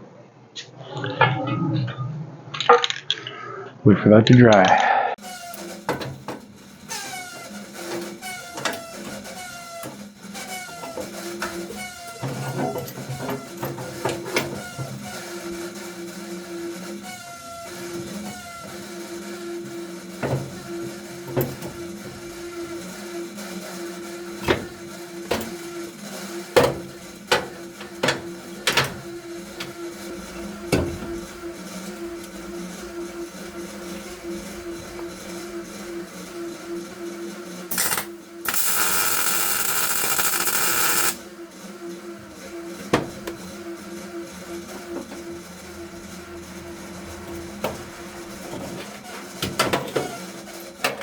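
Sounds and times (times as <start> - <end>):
steady hum: 18.7 - 48.9.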